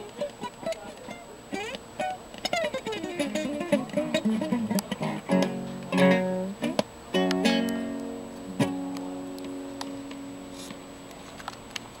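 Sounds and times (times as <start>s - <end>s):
acoustic guitar chord ringing: 1.1s - 10.6s.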